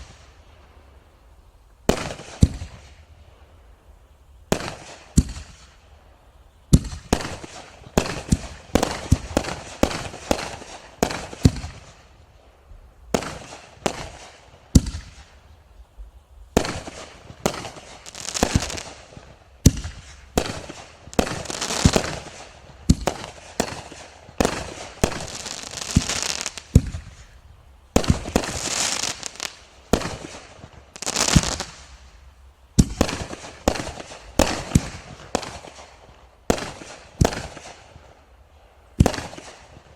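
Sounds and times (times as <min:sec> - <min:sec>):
fireworks crackling: 0:00.0 - 0:03.6, 0:04.4 - 0:39.9
firework shells bursting: 0:16.6 - 0:27.4.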